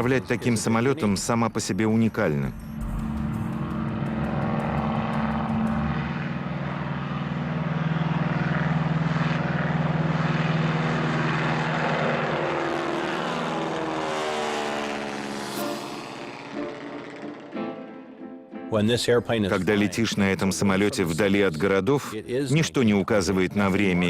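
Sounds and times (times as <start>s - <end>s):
propeller plane engine: 0.0s - 1.3s, 2.0s - 18.4s.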